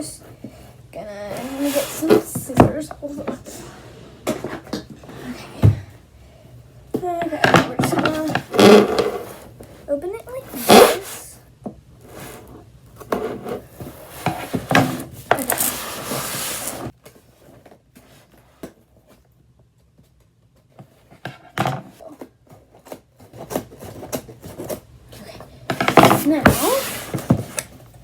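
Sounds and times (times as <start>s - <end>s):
cardboard rubbing: 1.2s - 5.5s, 7.7s - 11.3s, 12.0s - 18.5s, 25.7s - 28.0s
scissors slicing packing tape: 15.4s - 15.8s
knocks and rustles: 20.0s - 28.0s.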